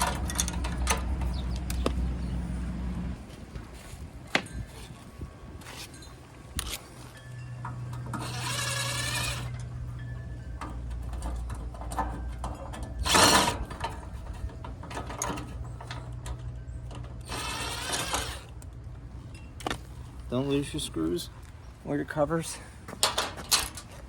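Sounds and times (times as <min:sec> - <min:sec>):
steady low hum: 0:00.0 - 0:21.8
small motor whirring: 0:08.2 - 0:09.7, 0:17.2 - 0:18.5.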